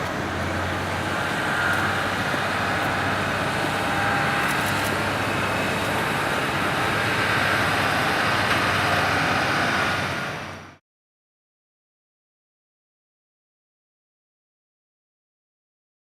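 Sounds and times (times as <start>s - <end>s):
propeller aircraft engine running: 0.0s - 10.8s.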